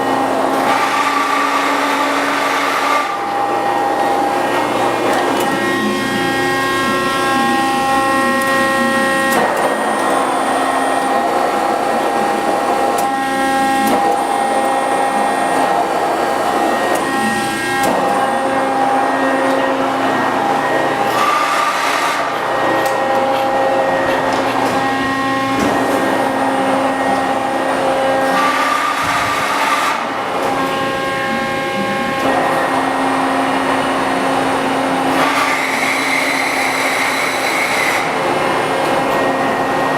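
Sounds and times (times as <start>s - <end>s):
hydraulic press brake whining: 0.0s - 39.9s.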